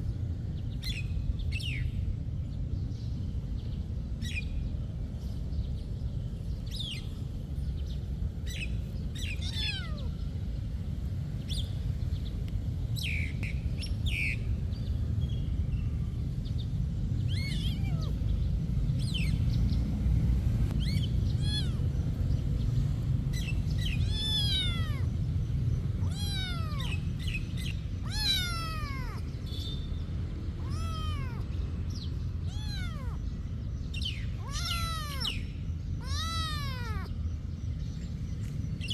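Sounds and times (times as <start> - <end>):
steady low rumble: 0.0 - 38.9
cat chirps: 9.2 - 10.2, 17.3 - 18.3, 20.8 - 22.1, 23.4 - 29.9, 30.6 - 37.2
cat meowing: 9.2 - 10.2, 17.3 - 18.3, 20.8 - 22.1, 23.4 - 25.2, 25.8 - 29.8, 30.6 - 33.3, 34.0 - 37.2.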